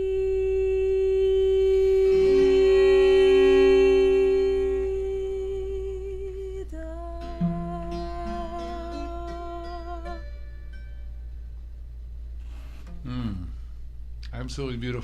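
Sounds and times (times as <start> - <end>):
plucked notes: 7.0 - 11.7.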